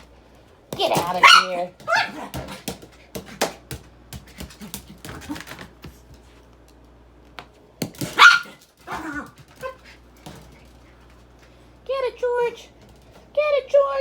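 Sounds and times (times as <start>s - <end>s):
small dog barking: 1.1s - 2.6s, 8.0s - 9.8s.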